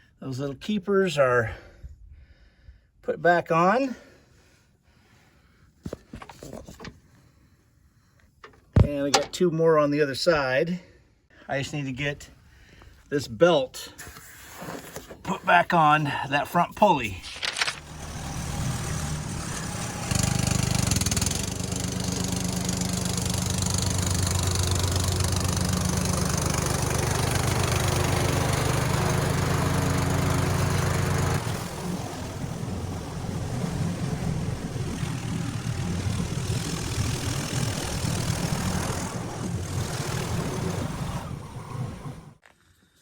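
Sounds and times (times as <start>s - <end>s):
riding lawn mower engine: 16.9s - 42.5s.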